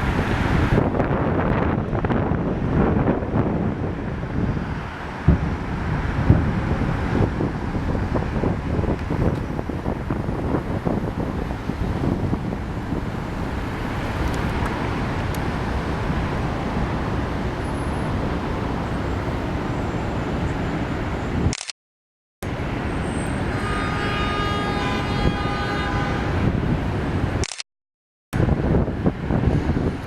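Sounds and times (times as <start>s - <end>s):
city noise: 0.0s - 21.7s, 22.4s - 27.6s, 28.4s - 30.0s
wind: 0.0s - 21.8s, 22.4s - 27.7s, 28.3s - 30.0s
fireworks booming: 5.2s - 6.7s.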